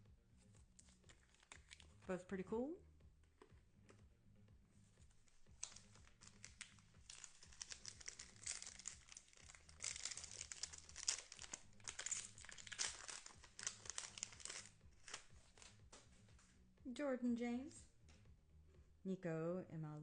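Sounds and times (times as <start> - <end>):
wrapper tearing and crinkling: 0.8 - 2.0, 5.5 - 15.8.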